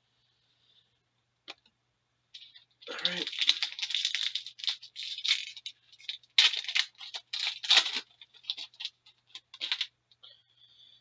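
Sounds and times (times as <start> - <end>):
cards rustling: 2.4 - 9.9
wrapper crinkling and tearing: 2.4 - 9.9.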